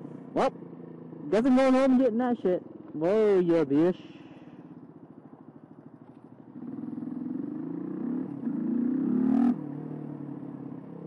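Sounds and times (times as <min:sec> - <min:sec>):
motorcycle engine revving: 0:00.1 - 0:11.0.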